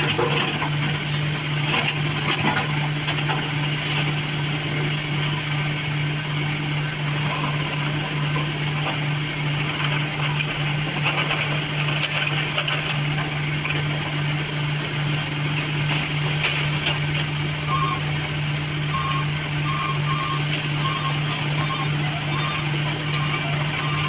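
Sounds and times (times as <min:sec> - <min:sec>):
heavy machinery engine running: 0:00.0 - 0:24.0
backup alarm beeping: 0:17.6 - 0:18.2, 0:18.8 - 0:24.0.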